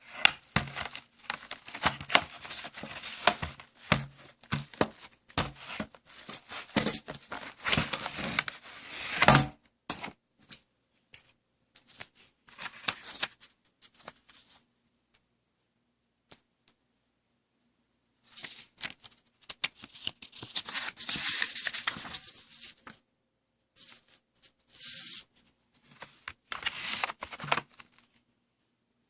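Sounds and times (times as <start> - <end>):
packaging crinkling and rustling: 0.0 - 9.5, 26.4 - 28.2.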